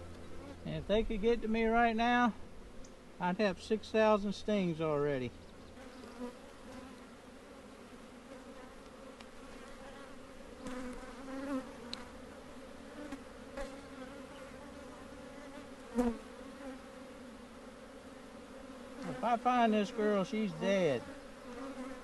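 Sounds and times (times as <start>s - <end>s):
honeybees buzzing: 0.0s - 22.0s.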